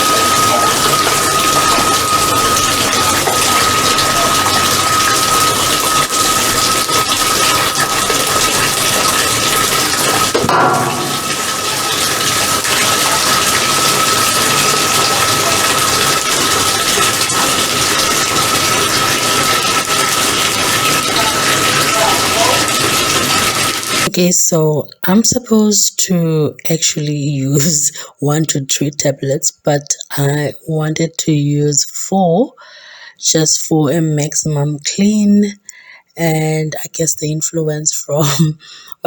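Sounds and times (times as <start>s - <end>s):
thin high tone: 0.0s - 24.0s
washing machine filling with water: 0.0s - 25.8s, 26.4s - 32.4s.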